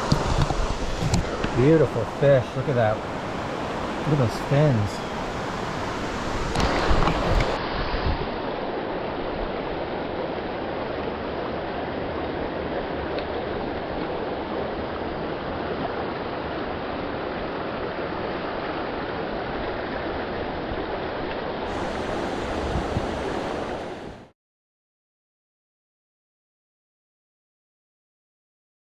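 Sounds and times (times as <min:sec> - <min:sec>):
creek water flowing: 0:00.0 - 0:07.6, 0:21.6 - 0:24.3.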